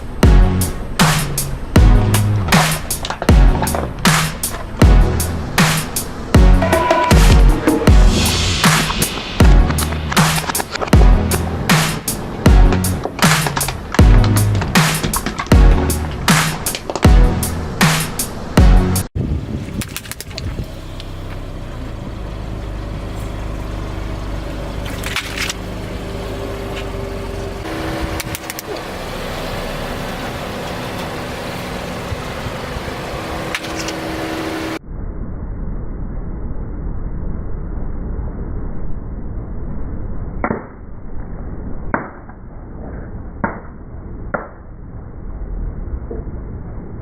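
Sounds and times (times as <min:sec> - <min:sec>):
car engine running: 0:00.0 - 0:19.1, 0:20.0 - 0:34.8
tyres rumbling over objects: 0:00.9 - 0:19.1
sharp cracks of objects crushed: 0:08.7 - 0:18.2, 0:19.8 - 0:20.5, 0:24.8 - 0:25.6.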